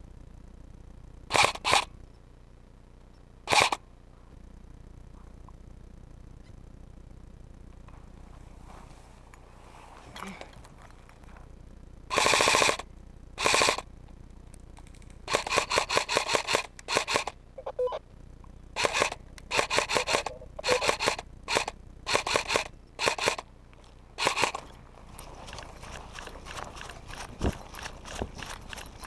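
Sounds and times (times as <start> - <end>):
airsoft rifle automatic bursts: 1.3 - 1.9, 3.5 - 3.8, 12.1 - 13.9, 15.2 - 17.4, 18.8 - 23.5, 24.2 - 29.0.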